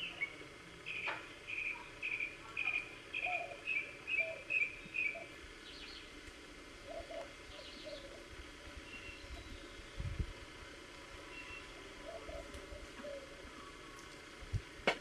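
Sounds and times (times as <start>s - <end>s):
bird chirping: 0.0s - 6.1s, 6.9s - 8.2s, 8.8s - 10.0s, 11.3s - 12.5s.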